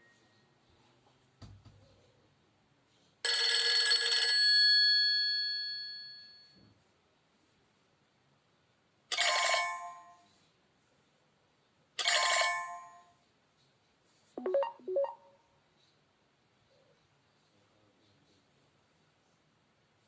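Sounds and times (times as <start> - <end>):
phone bell-like chime: 14.4 - 15.2.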